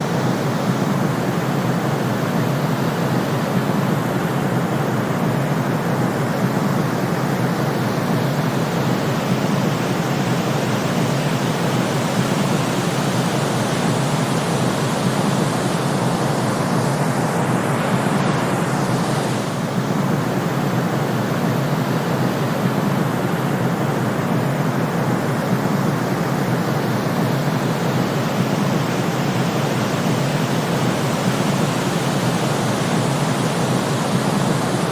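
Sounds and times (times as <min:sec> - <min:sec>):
white noise hiss: 0:00.0 - 0:34.9.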